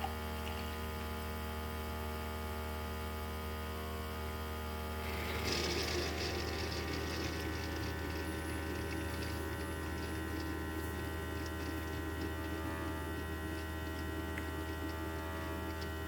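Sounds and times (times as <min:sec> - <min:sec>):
coffee maker pump humming: 0:00.0 - 0:16.0
hot water hissing: 0:05.0 - 0:13.8.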